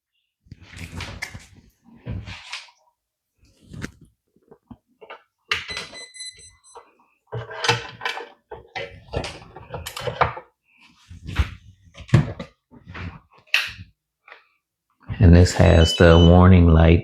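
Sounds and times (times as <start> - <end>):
knocks and handling sounds: 3.6 - 10.6
electronic startup beep: 15.5 - 16.7.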